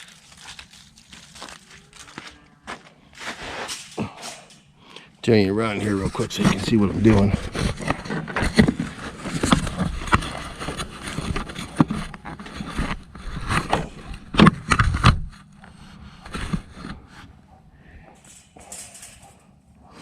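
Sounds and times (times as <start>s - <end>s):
knocks and clatter of handled objects: 6.0s - 15.3s, 18.0s - 19.5s.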